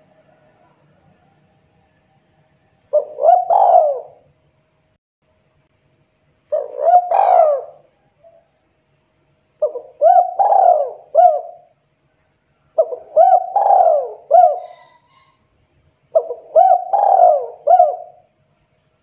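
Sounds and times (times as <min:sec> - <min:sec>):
dove cooing: 0:02.9 - 0:04.3, 0:06.5 - 0:08.5, 0:09.6 - 0:11.7, 0:12.8 - 0:15.4, 0:16.1 - 0:18.3.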